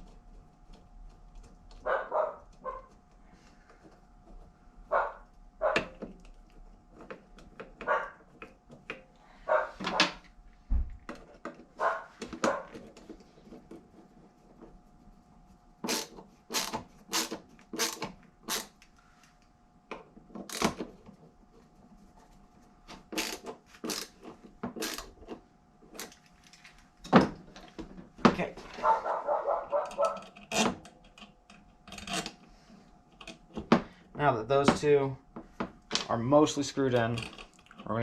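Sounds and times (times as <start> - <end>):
dog barking: 1.8 - 2.9, 4.9 - 5.9, 7.8 - 8.2, 9.4 - 10.2, 11.8 - 12.8, 28.8 - 30.2.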